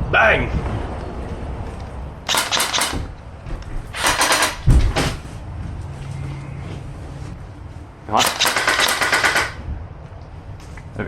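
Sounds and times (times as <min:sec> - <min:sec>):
bursts of rapid gunshots: 0:02.3 - 0:03.1, 0:03.9 - 0:04.7, 0:08.2 - 0:09.6
heavy low thump: 0:02.8 - 0:05.8.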